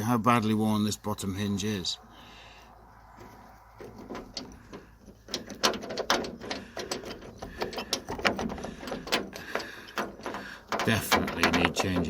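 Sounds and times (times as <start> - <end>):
metal hinge clicking and clunking: 3.2 - 12.0.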